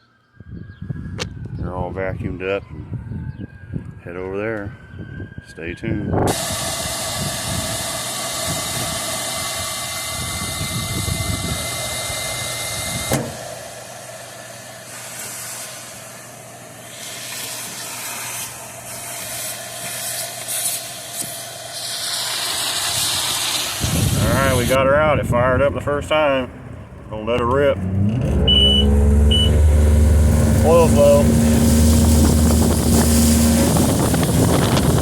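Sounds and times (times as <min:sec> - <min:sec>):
vehicle engine noise: 0:23.7 - 0:35.0
faint held tone: 0:28.4 - 0:29.8.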